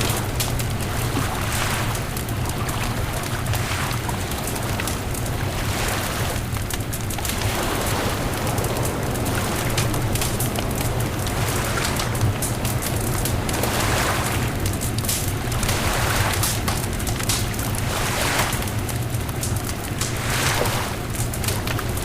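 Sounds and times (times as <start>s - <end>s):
low rumble: 0.0s - 18.0s
surf: 0.0s - 19.2s, 19.9s - 22.0s
bonfire crackling and popping: 0.0s - 22.0s
wind: 0.0s - 22.0s.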